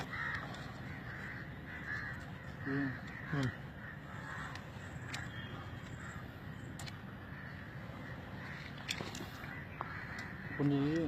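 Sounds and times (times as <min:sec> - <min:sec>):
bird call: 0:00.0 - 0:11.0
faint clicks: 0:04.3 - 0:07.0.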